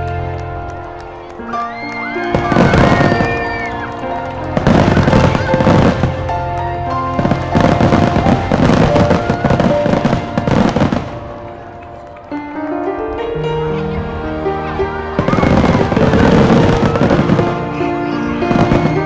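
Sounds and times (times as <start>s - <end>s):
fireworks crackling and popping: 0.0s - 12.5s, 15.2s - 17.8s, 18.4s - 19.0s
music playing: 0.0s - 19.0s.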